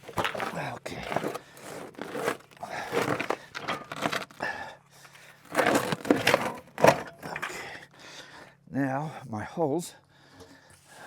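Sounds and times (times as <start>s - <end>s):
gear knocking and scraping: 0.0s - 4.5s, 5.4s - 7.4s
gravel bucket being handled: 0.0s - 7.6s.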